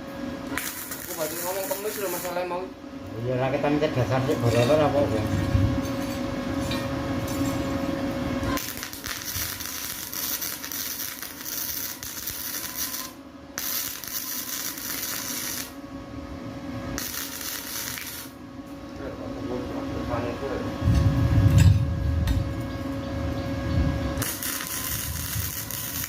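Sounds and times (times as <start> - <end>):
welding arc crackling: 0.0 - 2.7, 8.5 - 15.8, 16.9 - 18.4, 24.2 - 26.0.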